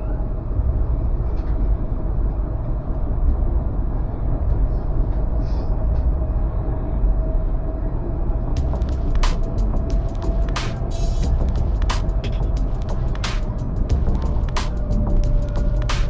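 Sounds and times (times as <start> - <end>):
tram rumbling on track: 0.0 - 16.0
thin constant whine: 7.9 - 16.0.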